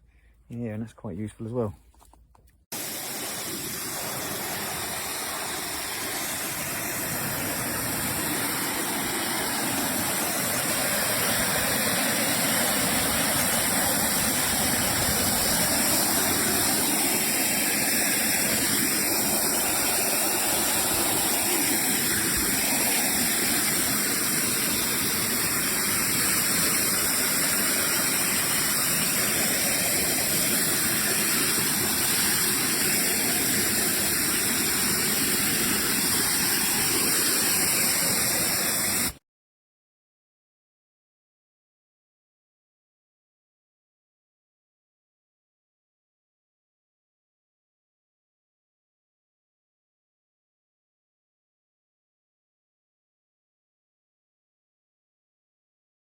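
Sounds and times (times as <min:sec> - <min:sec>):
pressure washer water jet spraying: 0:02.7 - 0:39.2.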